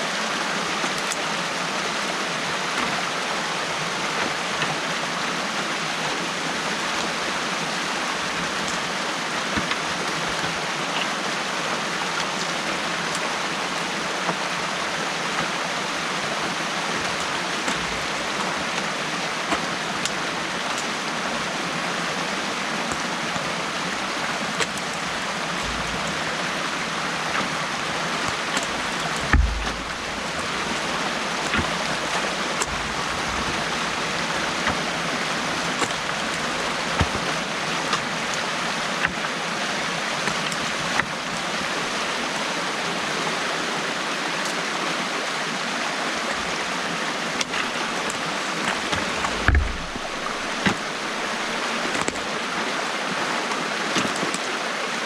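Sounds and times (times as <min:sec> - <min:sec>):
water rushing through dam: 0:00.0 - 0:55.0
small clicks and splashes: 0:00.1 - 0:42.3, 0:45.6 - 0:55.0
dull thump: 0:28.6 - 0:33.7, 0:48.9 - 0:51.2.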